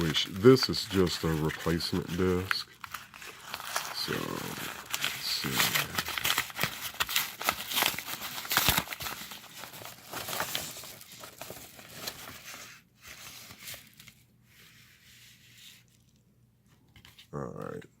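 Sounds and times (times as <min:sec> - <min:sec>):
packaging crinkling and tearing: 0:00.0 - 0:14.2.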